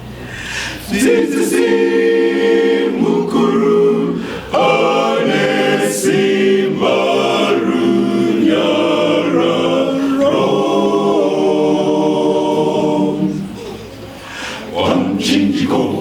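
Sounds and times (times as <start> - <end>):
choir singing a hymn a cappella: 0.0 - 16.0.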